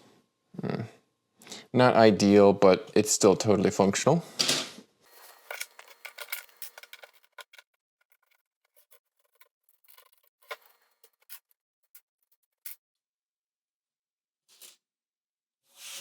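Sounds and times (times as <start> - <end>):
plastic bricks clicking and rattling: 5.5 - 12.5.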